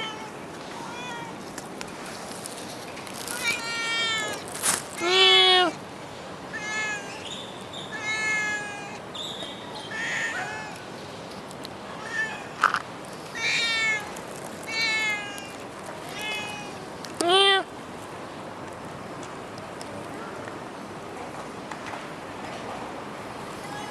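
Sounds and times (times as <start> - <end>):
cat meowing: 3.3 - 5.8, 6.5 - 7.2, 7.9 - 9.0, 9.9 - 10.8, 13.3 - 14.1, 14.7 - 17.7.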